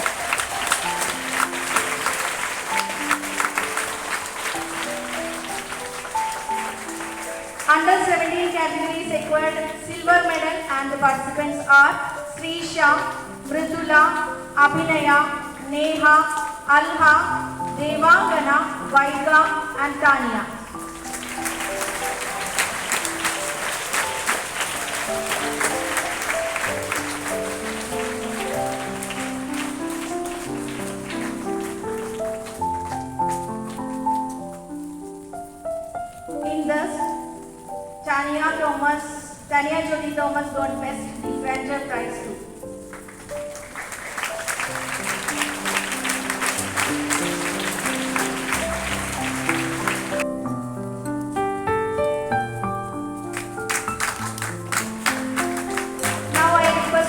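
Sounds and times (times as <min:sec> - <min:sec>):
audience applauding: 0:00.0 - 0:10.6, 0:20.6 - 0:34.4, 0:41.9 - 0:50.3, 0:53.3 - 0:57.0
instrumental music with keyboard: 0:00.0 - 0:57.0.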